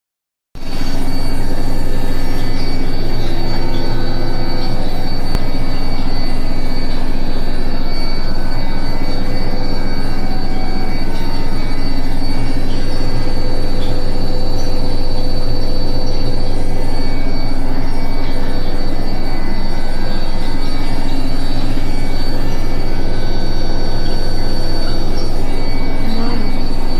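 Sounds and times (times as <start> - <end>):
washing machine spinning: 0.6 - 26.9
high-pitched squeak: 25.6 - 26.9.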